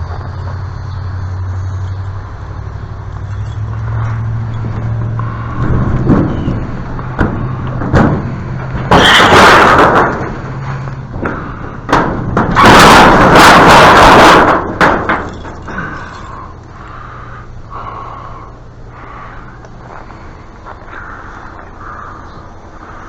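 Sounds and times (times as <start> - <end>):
steady low hum: 0.0 - 23.0
knocks and clacks of handling: 3.2 - 16.6.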